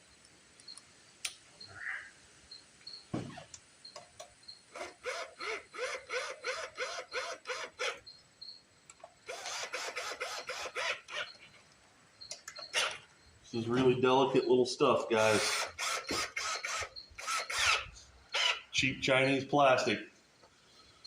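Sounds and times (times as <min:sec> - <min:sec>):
hand tool driving bolts: 0:09.3 - 0:11.3, 0:15.2 - 0:18.6.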